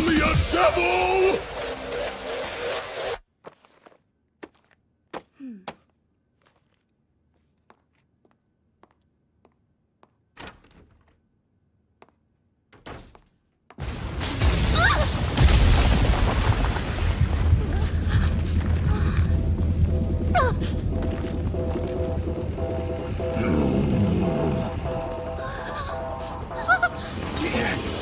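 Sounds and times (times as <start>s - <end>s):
crashing and booming hits: 13.8s - 28.0s
deep rumble: 15.4s - 28.0s.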